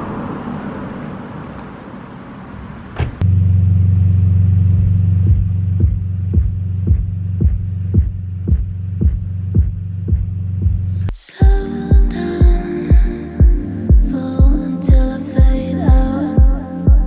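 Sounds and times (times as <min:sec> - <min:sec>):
low droning hum: 0:03.2 - 0:17.0
heartbeat-like thump: 0:04.7 - 0:17.0.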